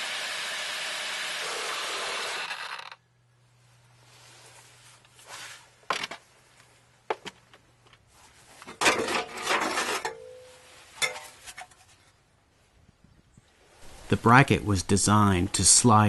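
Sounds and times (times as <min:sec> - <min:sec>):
rattling metal scrape: 0:08.7 - 0:11.8.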